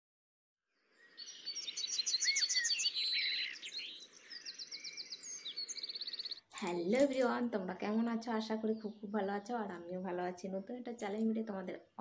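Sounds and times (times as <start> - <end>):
birds chirping and singing: 1.0 - 7.3.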